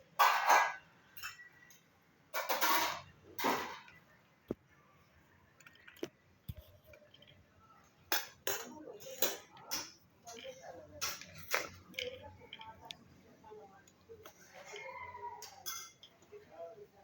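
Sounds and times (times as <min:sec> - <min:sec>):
utensils clinking and scraping dishes: 0:00.2 - 0:04.0, 0:08.1 - 0:13.0, 0:13.9 - 0:16.7.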